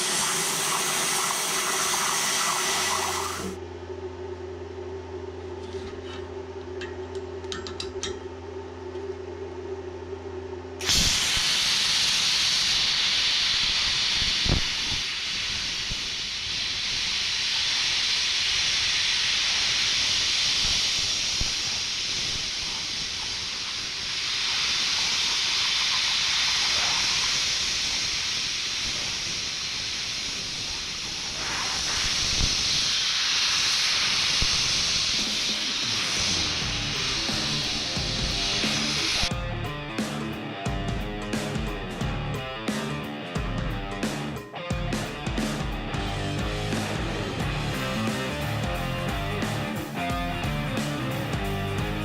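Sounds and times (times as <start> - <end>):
plasma cutter torch hissing: 0.0 - 3.6, 10.8 - 39.4.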